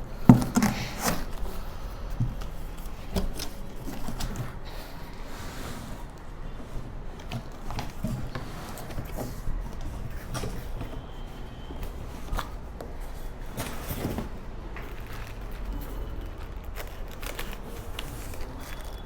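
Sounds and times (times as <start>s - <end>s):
cardboard rustling and scraping: 0.0s - 19.0s.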